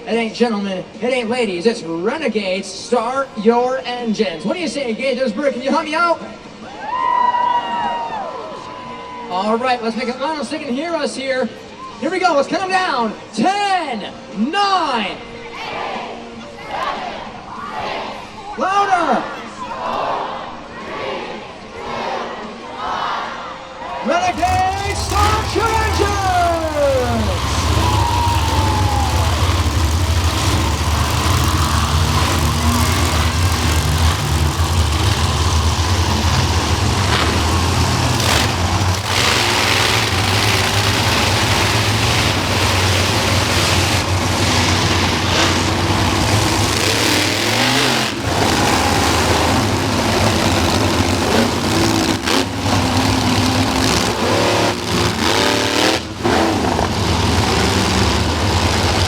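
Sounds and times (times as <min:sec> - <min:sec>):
monster truck engines revving: 0:24.2 - 0:59.0.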